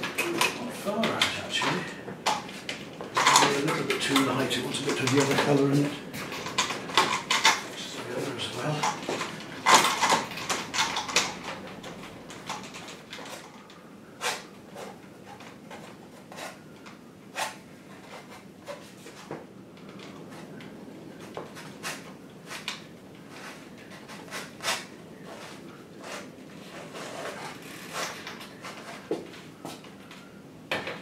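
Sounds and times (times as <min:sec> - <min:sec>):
painting tools scraping canvas: 0:14.2 - 0:19.4, 0:21.2 - 0:29.8.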